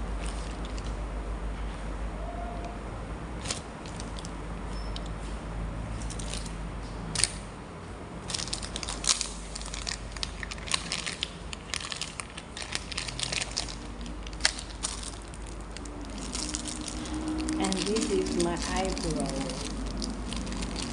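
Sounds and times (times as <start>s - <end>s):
plastic packaging crinkling: 8.2s - 20.9s.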